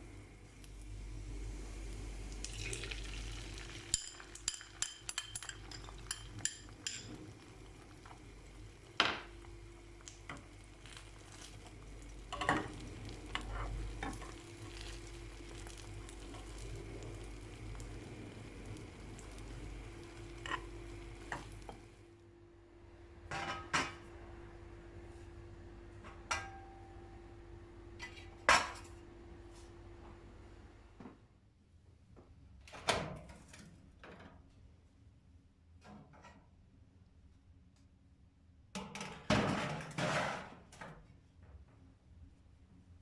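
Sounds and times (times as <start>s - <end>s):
food frying sizzle: 0.0s - 22.0s
metal utensil clinking against pot: 3.9s - 7.1s.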